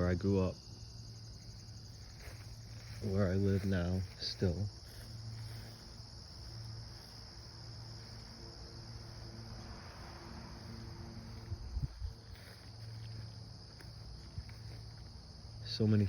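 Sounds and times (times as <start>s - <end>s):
cricket chorus chirring: 0.0s - 16.0s.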